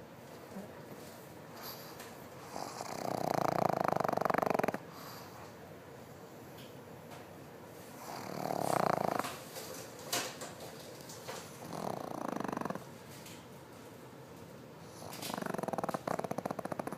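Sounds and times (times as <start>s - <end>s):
pig snoring: 1.6s - 5.3s, 8.0s - 9.4s, 11.6s - 12.9s, 14.9s - 16.9s.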